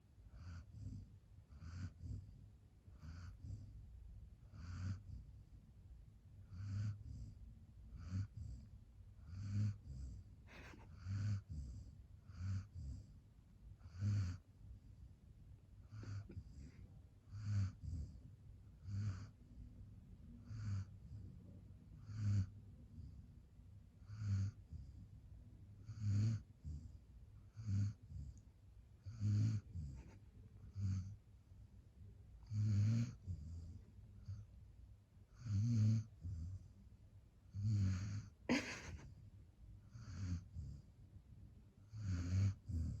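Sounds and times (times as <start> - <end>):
dog snoring: 0.3 - 3.8, 4.4 - 5.3, 6.4 - 13.2, 13.8 - 14.5, 15.8 - 19.5, 20.4 - 21.4, 22.0 - 23.3, 24.0 - 25.1, 25.8 - 28.4, 29.0 - 31.2, 32.4 - 34.5, 35.3 - 36.7, 37.5 - 39.1, 39.8 - 40.9, 41.8 - 43.0.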